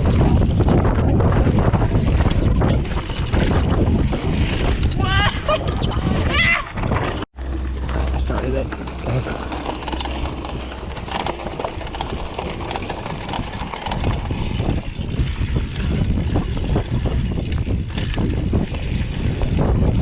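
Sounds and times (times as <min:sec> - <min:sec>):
wind buffeting microphone: 0:00.0 - 0:20.0
bike rattling over rocks: 0:07.0 - 0:19.7.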